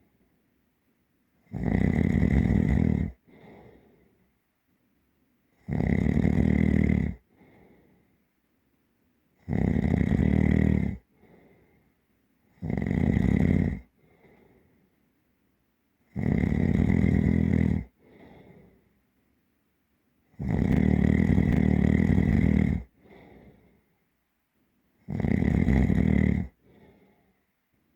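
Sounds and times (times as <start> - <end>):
deep heavy snoring: 1.5 - 3.8, 5.6 - 7.5, 9.4 - 11.1, 12.6 - 13.9, 16.1 - 18.7, 20.4 - 23.7, 25.1 - 27.0
soft breath out: 3.2 - 4.4, 7.2 - 8.3, 11.1 - 12.0, 13.9 - 15.0, 17.9 - 19.0, 22.9 - 24.0, 26.6 - 27.6.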